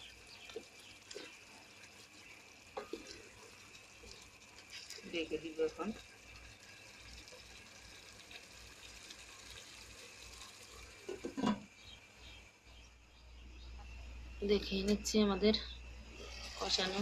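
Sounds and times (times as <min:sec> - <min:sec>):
chicken sizzling in oil: 0:00.0 - 0:12.5, 0:16.2 - 0:17.0.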